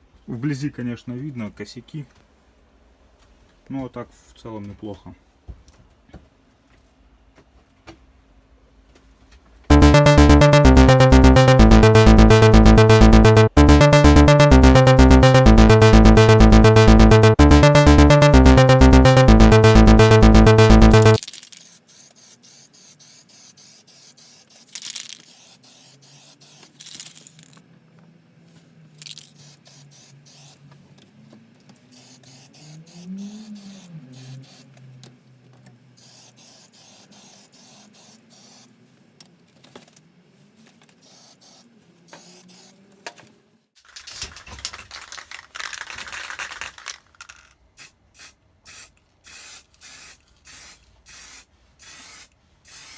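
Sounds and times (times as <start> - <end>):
electronic music: 9.7 - 21.2
spray paint can hissing: 21.2 - 27.4, 29.0 - 30.6, 31.9 - 34.7, 36.0 - 38.7, 41.0 - 42.7, 44.9 - 47.0, 47.8 - 52.9.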